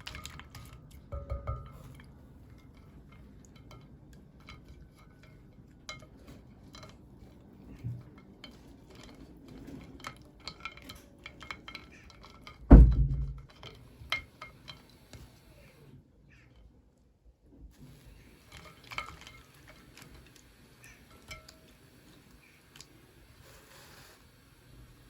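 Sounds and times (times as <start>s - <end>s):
heavy thud against table: 12.7s - 13.4s.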